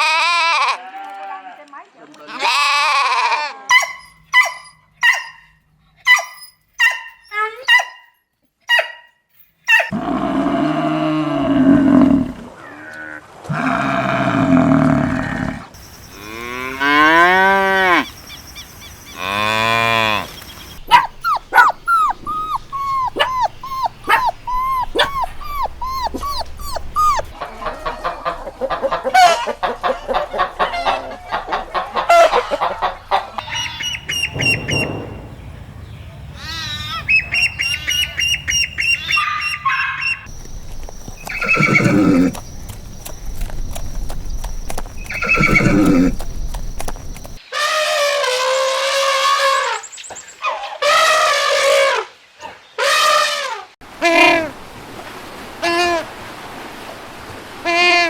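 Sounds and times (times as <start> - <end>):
dog barking: 3.7 - 8.1, 8.7 - 10.0, 20.8 - 27.4, 39.1 - 40.2
farm animal calls: 9.7 - 18.2, 19.0 - 35.2, 36.4 - 52.0
cow mooing: 9.9 - 18.0, 19.2 - 20.3, 41.4 - 42.4, 45.1 - 46.2.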